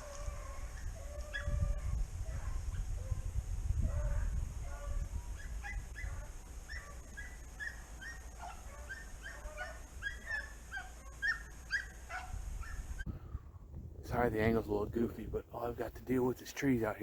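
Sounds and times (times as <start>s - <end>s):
wind rumble on microphone: 0.0s - 7.8s, 12.1s - 16.0s
distant dogs baying: 0.0s - 13.6s.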